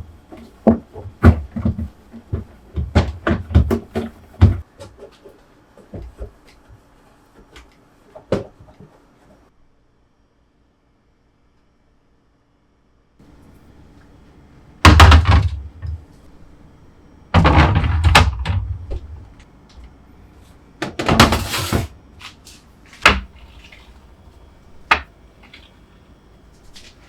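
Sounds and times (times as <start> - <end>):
cabinet doors knocking shut: 0.6 - 4.6, 14.9 - 15.9.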